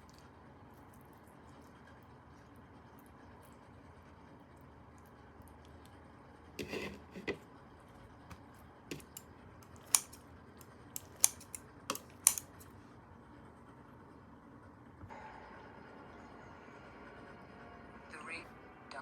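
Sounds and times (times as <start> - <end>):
rustling scrape: 6.6 - 7.4
clicks of small hard objects: 8.9 - 10.2, 11.0 - 12.7.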